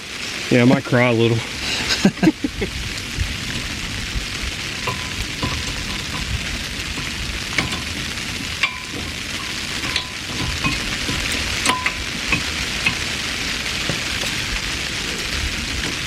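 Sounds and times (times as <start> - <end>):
steady hiss: 0.0 - 16.0.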